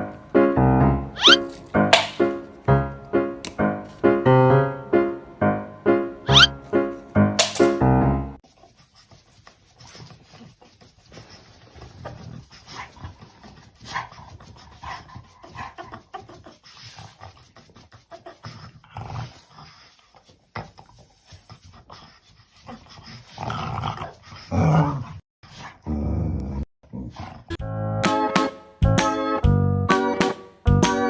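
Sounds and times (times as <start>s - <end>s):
dog making short vocal sounds: 1.2s - 1.4s, 6.3s - 6.5s.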